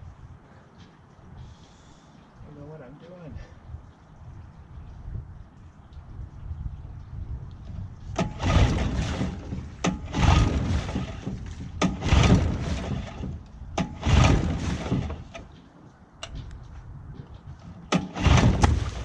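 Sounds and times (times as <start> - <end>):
outboard engine turning over: 8.2 - 15.5, 17.9 - 19.0.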